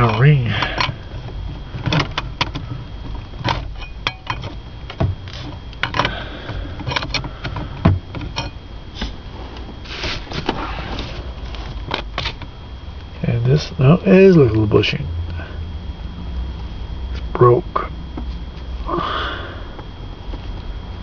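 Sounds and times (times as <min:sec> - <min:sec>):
clicks and knocks of small parts: 0:06.8 - 0:08.6.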